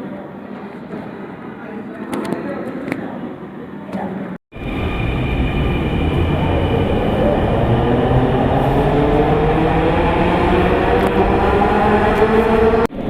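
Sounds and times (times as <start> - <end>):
electric train rumbling: 4.5 - 13.0.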